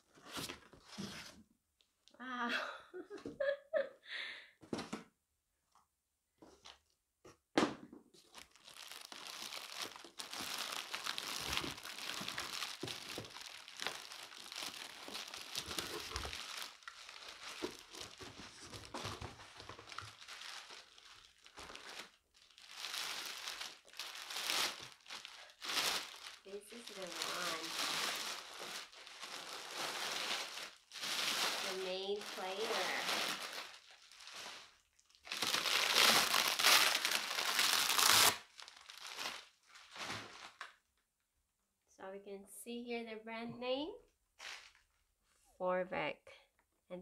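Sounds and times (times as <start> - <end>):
packaging crinkling and tearing: 8.2 - 40.8.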